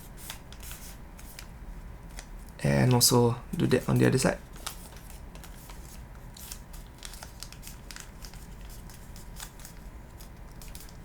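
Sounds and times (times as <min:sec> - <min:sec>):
paper being folded and creased: 0:00.2 - 0:01.5, 0:03.8 - 0:11.0.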